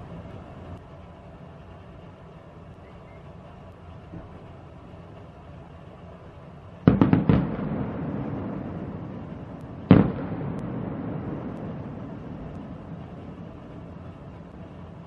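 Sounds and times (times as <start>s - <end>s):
distant firework bangs: 6.8s - 15.0s
echoing rumble: 6.8s - 15.0s.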